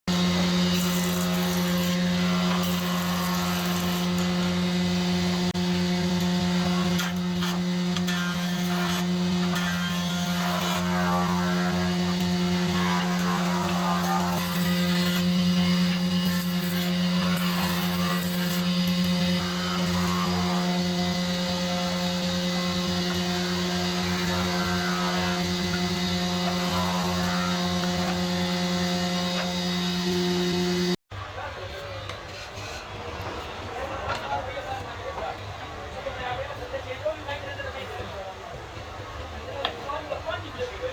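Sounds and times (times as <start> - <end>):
power tool motor humming: 0.1 - 31.0.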